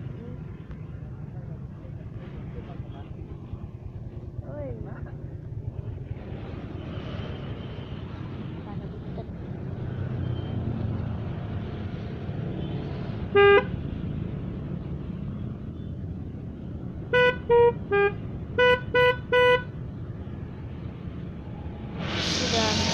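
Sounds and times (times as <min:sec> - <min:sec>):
low engine and street rumble: 0:00.0 - 0:22.9
scooter multi-tone horn: 0:13.4 - 0:13.7, 0:17.1 - 0:19.7.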